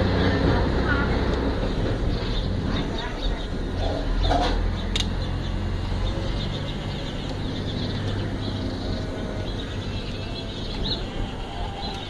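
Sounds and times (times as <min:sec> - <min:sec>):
birds chirping: 0:00.0 - 0:12.0
toy excavator electric motors running: 0:04.9 - 0:12.0.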